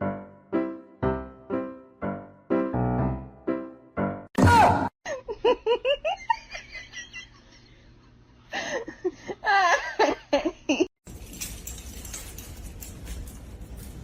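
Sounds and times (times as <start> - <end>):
person giggling: 8.6 - 10.9.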